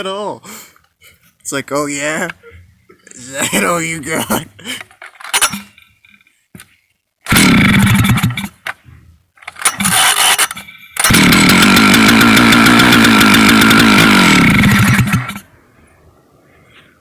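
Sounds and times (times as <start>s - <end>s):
chainsaw engine running: 7.3s - 8.6s, 9.4s - 15.5s.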